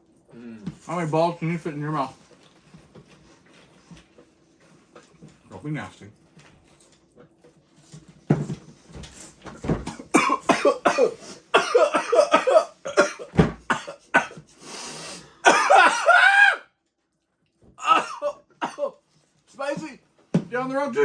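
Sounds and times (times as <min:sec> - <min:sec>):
strained cough-groan: 0:09.8 - 0:14.5, 0:15.4 - 0:16.6, 0:17.8 - 0:19.0
person coughing: 0:09.9 - 0:14.4, 0:15.4 - 0:16.6, 0:17.8 - 0:19.0.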